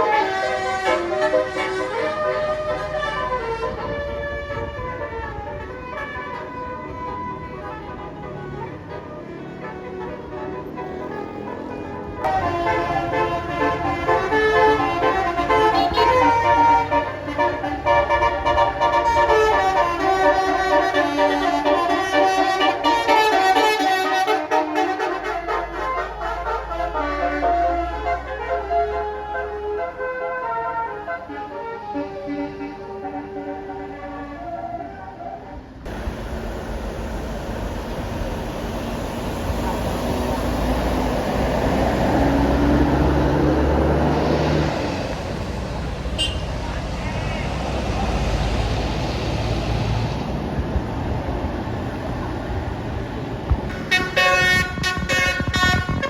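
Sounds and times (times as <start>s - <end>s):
bus musical horn tune: 0.0s - 36.7s, 46.0s - 46.8s, 53.7s - 56.0s
road noise: 0.0s - 56.0s
low engine rumble: 10.5s - 27.7s, 35.8s - 56.0s.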